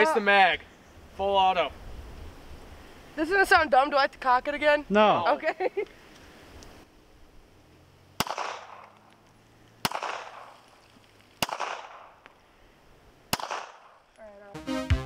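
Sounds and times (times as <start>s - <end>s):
pistol shots with echo: 8.2s - 9.0s, 9.8s - 10.6s, 11.4s - 12.2s, 13.3s - 14.0s.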